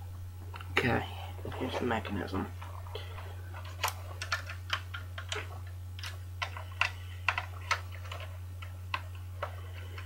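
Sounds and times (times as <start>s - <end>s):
steady low hum: 0.0s - 10.0s
plastic bricks clicking: 3.6s - 10.0s.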